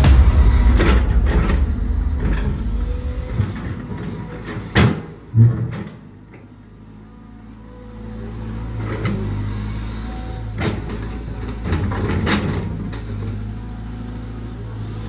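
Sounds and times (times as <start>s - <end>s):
machinery engine rumble: 0.0s - 4.5s
heavy thump: 0.0s - 4.7s
sharp metallic clank: 0.0s - 4.7s.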